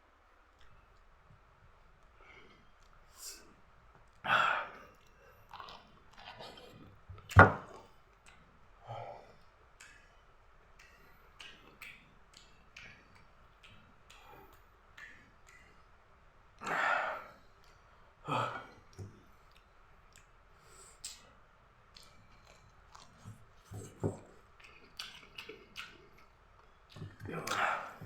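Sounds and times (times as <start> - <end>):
biting and chewing: 5.5 - 8.4, 22.0 - 26.3.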